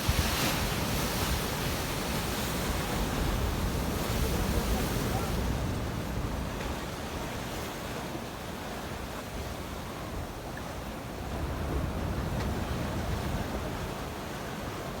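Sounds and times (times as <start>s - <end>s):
wind on microphone: 0.0s - 7.5s
surf breaking on shore: 0.0s - 8.2s.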